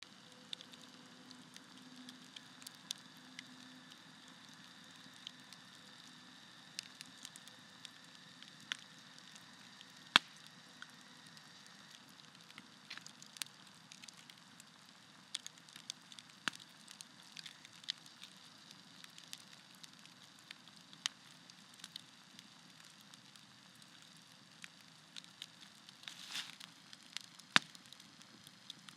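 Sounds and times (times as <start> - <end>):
campfire crackling and popping: 0.0 - 28.9
faint steady hiss: 0.0 - 28.9.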